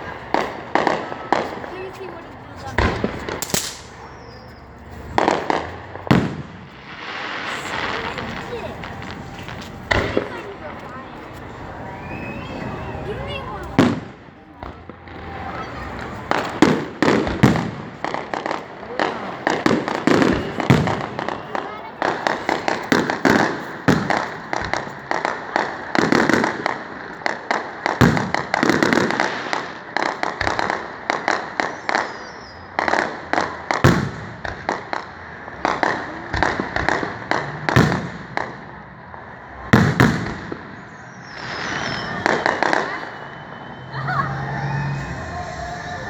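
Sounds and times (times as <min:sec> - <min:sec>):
fireworks booms and crackling: 0:00.0 - 0:46.0
strong firework bang: 0:05.2 - 0:10.5, 0:15.8 - 0:18.4, 0:19.0 - 0:21.4.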